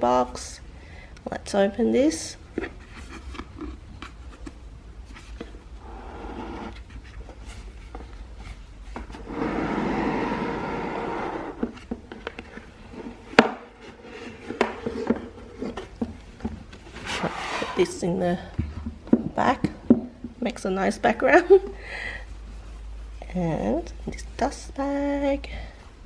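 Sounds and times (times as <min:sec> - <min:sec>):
cardboard box rubbing and rustling: 0:05.1 - 0:18.0.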